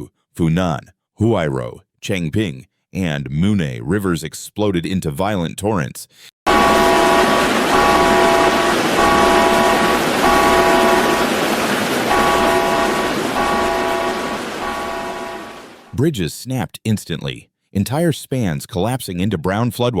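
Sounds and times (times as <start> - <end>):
horn blasts: 6.5 - 15.9
steady rushing noise: 6.5 - 15.9.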